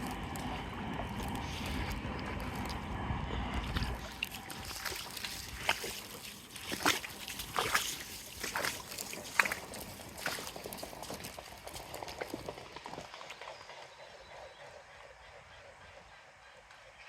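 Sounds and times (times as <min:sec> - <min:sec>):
footsteps splashing through water: 0:00.0 - 0:13.1.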